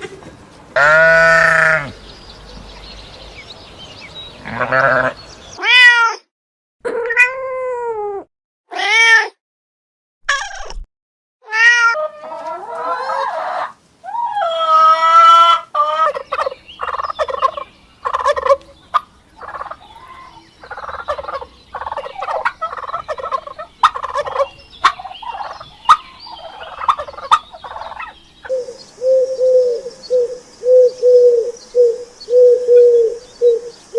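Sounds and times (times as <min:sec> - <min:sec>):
poultry calling: 0:00.8 - 0:05.9, 0:12.0 - 0:33.8
cat meowing: 0:04.5 - 0:06.3, 0:06.9 - 0:09.4, 0:11.4 - 0:12.1
pigeons cooing: 0:15.9 - 0:33.8.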